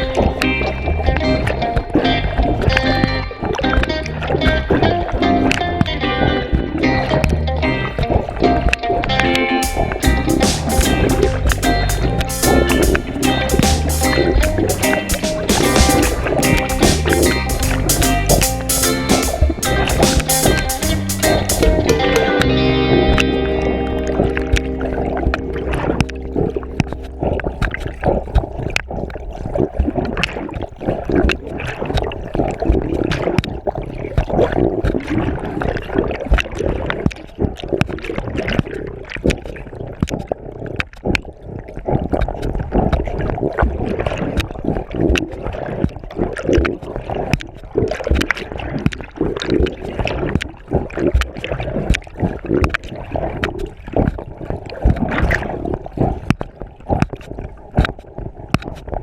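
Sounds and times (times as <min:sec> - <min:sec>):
water sloshing and splashing: 0:24.4 - 0:59.0.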